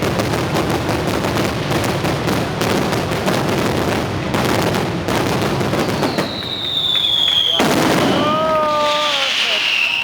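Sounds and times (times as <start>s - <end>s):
fireworks bangs: 0.0s - 10.0s.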